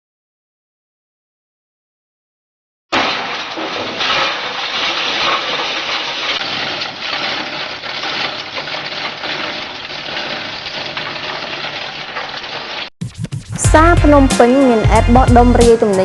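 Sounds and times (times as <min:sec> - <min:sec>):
bone grinder crunching: 0:03.6 - 0:12.9.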